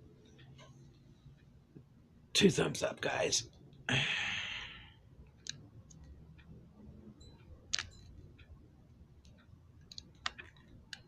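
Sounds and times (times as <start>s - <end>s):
faint clicks and taps: 0.0s - 2.0s, 5.2s - 11.0s.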